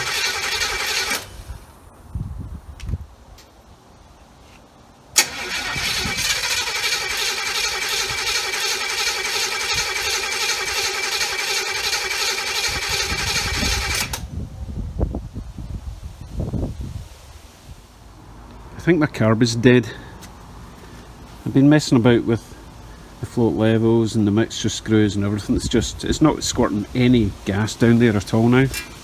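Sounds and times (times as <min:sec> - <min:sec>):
starter motor cranking engine: 0:00.0 - 0:01.7, 0:05.2 - 0:14.3, 0:28.1 - 0:29.0.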